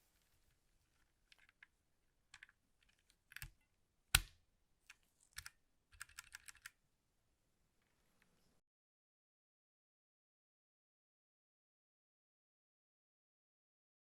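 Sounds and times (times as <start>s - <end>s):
mechanical keyboard clicks: 2.4s - 3.6s, 5.4s - 6.8s.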